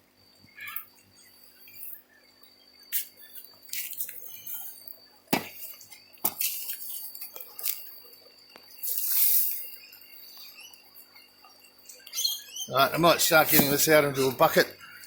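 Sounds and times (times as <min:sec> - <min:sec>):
digging through soil: 0:13.3 - 0:13.9.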